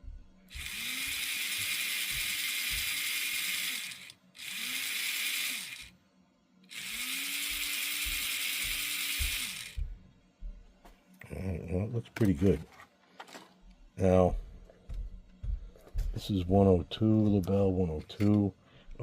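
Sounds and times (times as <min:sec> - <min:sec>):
model locomotive motor whining: 0:00.5 - 0:05.9, 0:06.7 - 0:09.8.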